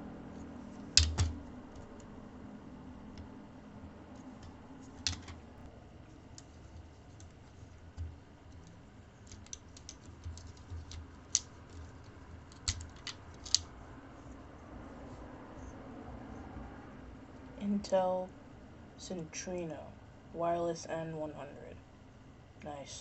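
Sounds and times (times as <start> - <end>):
faint steady hum: 0.0 - 23.0
small parts being handled: 0.8 - 2.1, 4.4 - 5.4, 6.3 - 13.8.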